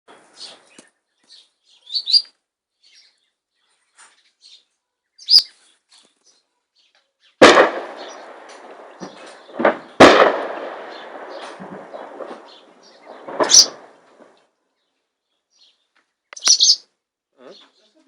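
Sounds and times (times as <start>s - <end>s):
small birds chirping: 0.1s - 18.0s
loud artillery blast: 7.4s - 14.4s.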